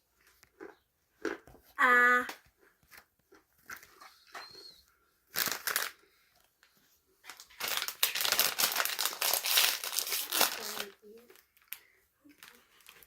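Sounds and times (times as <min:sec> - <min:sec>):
snack crunching and crackling: 0:00.0 - 0:06.2.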